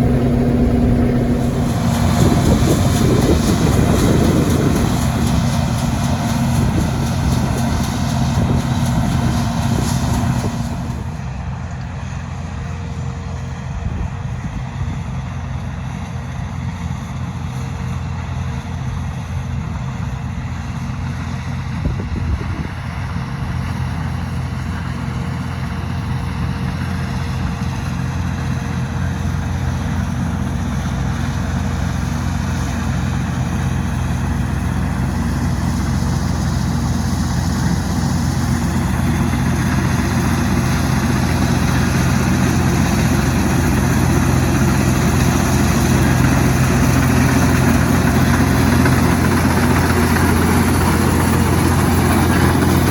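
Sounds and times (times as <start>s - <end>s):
rushing mechanical hiss: 0.0s - 11.1s
farm machine engine running: 0.0s - 52.9s.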